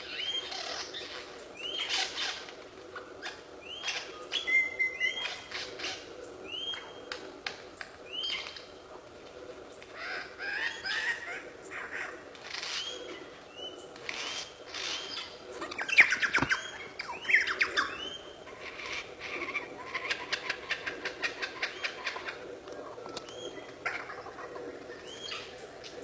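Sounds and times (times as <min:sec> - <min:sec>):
bird clicks and swooping calls: 0:09.8 - 0:26.0.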